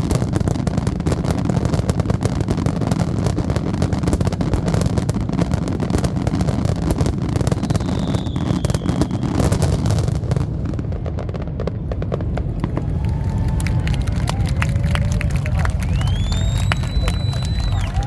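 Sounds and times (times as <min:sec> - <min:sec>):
fireworks crackling: 0:00.0 - 0:18.0
faint high whistle: 0:07.7 - 0:09.4, 0:15.4 - 0:18.0.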